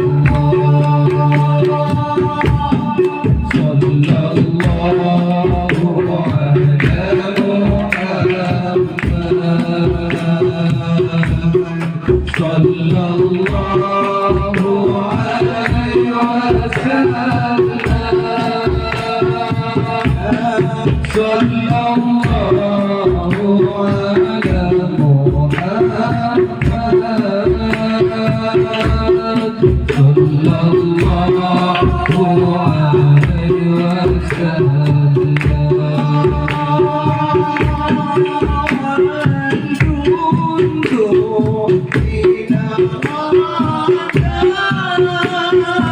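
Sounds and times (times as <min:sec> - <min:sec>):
devotional song singing: 0:00.0 - 0:45.9
hand drums beating: 0:00.0 - 0:45.9.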